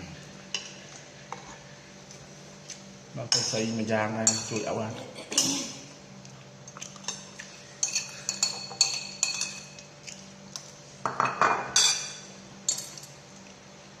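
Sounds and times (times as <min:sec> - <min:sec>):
cutlery and dishes clinking: 0:11.1 - 0:13.1.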